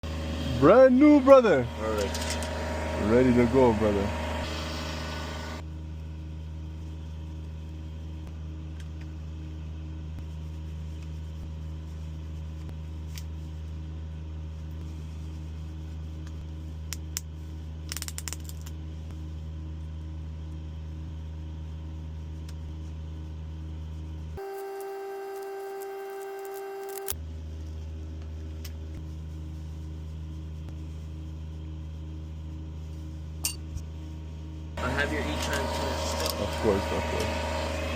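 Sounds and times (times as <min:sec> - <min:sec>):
vehicle engine idling: 0:00.0 - 0:05.6, 0:34.6 - 0:37.9.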